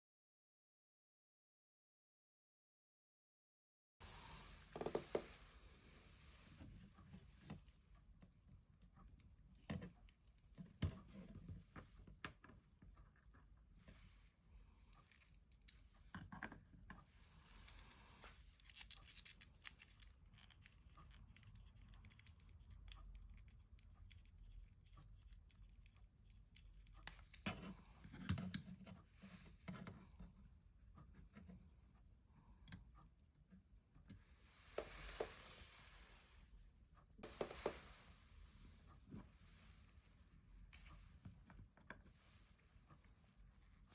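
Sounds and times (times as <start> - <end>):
plastic parts clicking and scraping: 17.6 - 26.0.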